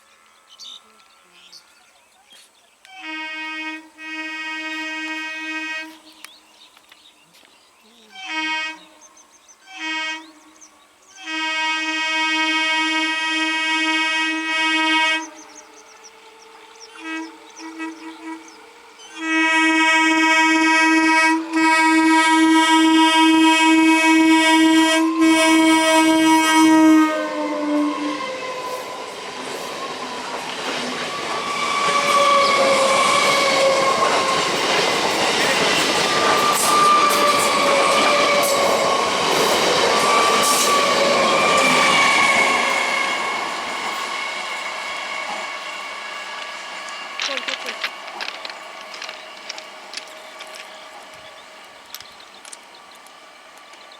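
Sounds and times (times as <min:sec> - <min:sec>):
train horn blast: 0:02.8 - 0:06.2, 0:07.9 - 0:15.6, 0:16.7 - 0:29.5, 0:31.0 - 0:46.2
wavering metallic squeal: 0:25.1 - 0:34.6, 0:36.0 - 0:39.3, 0:39.9 - 0:47.3
train wheels rumbling and clattering: 0:27.6 - 0:53.9.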